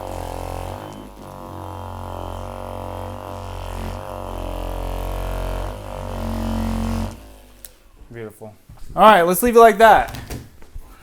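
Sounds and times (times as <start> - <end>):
massage gun motor buzzing: 0.0 - 8.1.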